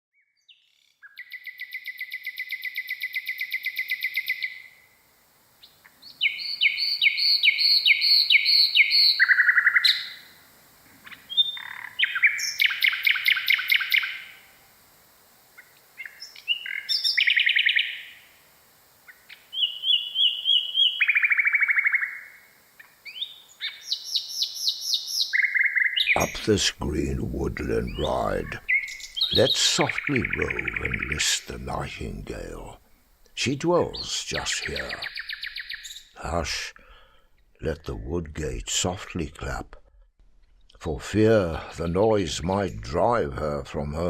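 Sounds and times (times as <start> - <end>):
nightingale singing: 0.2 - 4.9, 5.6 - 10.4, 11.0 - 14.5, 15.6 - 18.2, 19.1 - 36.4.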